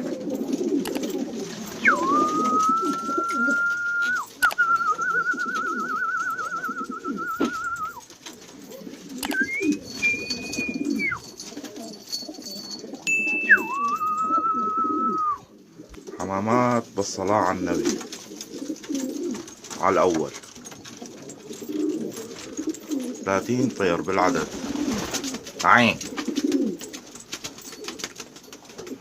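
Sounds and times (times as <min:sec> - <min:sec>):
pigeons cooing: 0:00.0 - 0:29.0
long whistled notes: 0:01.8 - 0:08.0, 0:09.3 - 0:11.3, 0:13.1 - 0:15.5.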